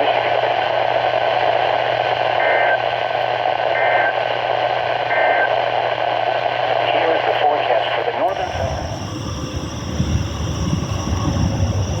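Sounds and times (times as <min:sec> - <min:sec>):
radio static hiss: 0:02.3 - 0:04.4, 0:05.0 - 0:06.0, 0:06.8 - 0:12.0
steady low hum: 0:08.3 - 0:12.0.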